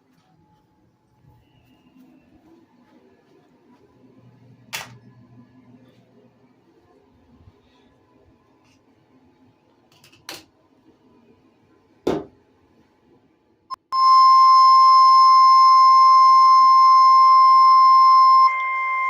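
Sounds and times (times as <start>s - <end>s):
short beep: 13.7s - 19.0s
loud steady electronic alert tone: 13.8s - 19.0s.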